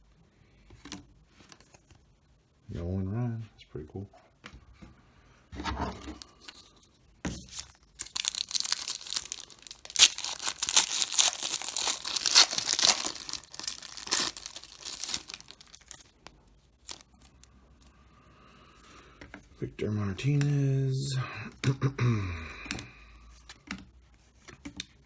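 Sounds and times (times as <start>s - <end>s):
handling noises: 6.0s - 16.1s
wrapper tearing and crinkling: 7.4s - 16.2s, 16.8s - 17.3s.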